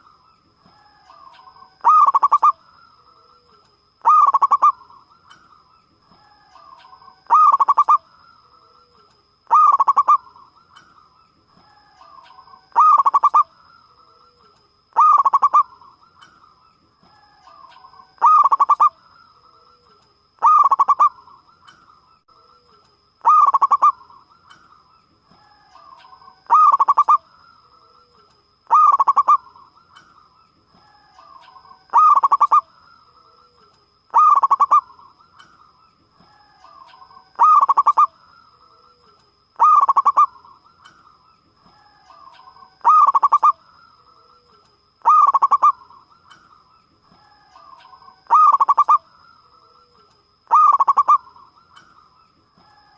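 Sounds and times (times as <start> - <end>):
faint steady high tone: 0.0 - 52.9
dove cooing: 0.8 - 2.6, 3.2 - 4.9, 6.2 - 8.0, 8.9 - 10.4, 11.7 - 13.5, 14.3 - 15.9, 17.2 - 19.0, 19.8 - 21.4, 23.2 - 24.2, 25.7 - 27.2, 28.7 - 29.6, 30.8 - 32.7, 33.6 - 35.1, 36.3 - 38.2, 39.6 - 40.6, 41.8 - 43.6, 44.2 - 46.1, 47.2 - 49.1, 49.7 - 51.6.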